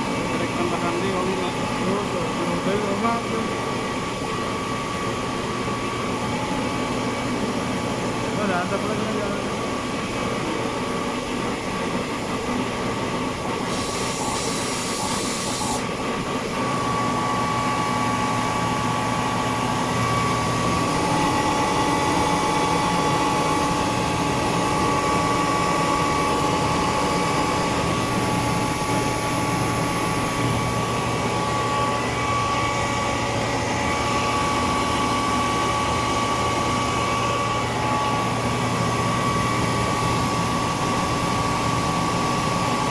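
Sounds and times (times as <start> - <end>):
air compressor humming and whining: 0.0 - 42.9
air hissing: 13.6 - 15.9.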